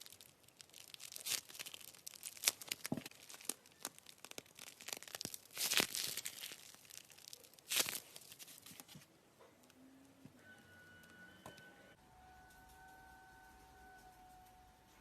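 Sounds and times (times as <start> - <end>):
slime crackling and popping: 0.0 - 8.8.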